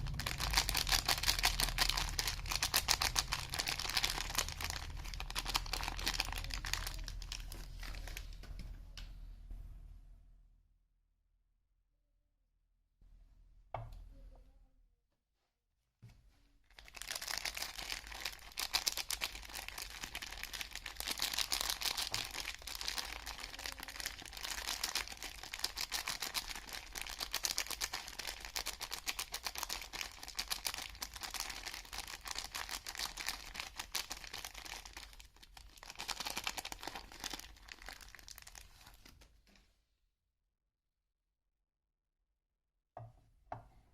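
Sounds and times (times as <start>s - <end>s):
wrapper crinkling and tearing: 0.0s - 8.4s, 16.7s - 39.3s.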